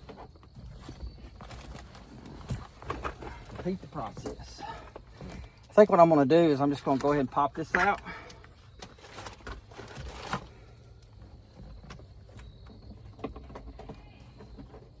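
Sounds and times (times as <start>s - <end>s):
plastic trim rustling and scraping: 6.6s - 10.7s.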